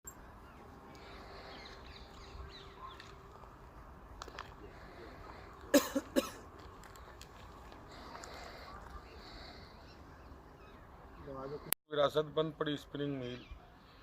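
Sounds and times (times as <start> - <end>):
loud bird calls: 0.3 - 3.6.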